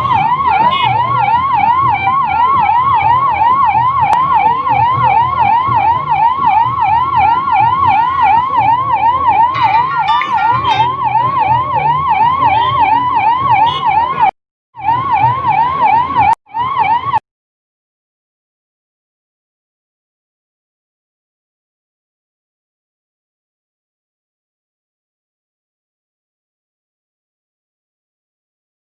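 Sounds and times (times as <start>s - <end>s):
ambulance siren yelping: 0.0s - 17.2s.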